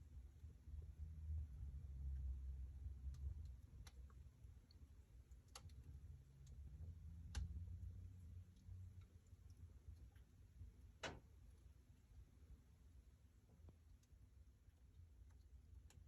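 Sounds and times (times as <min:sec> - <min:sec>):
faint low rumble: 0:00.0 - 0:16.0
wood fire crackling: 0:01.7 - 0:16.0.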